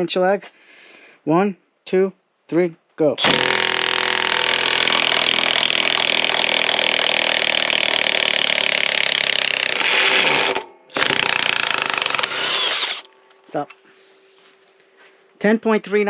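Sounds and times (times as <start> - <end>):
impact wrench hammering: 3.2 - 13.1.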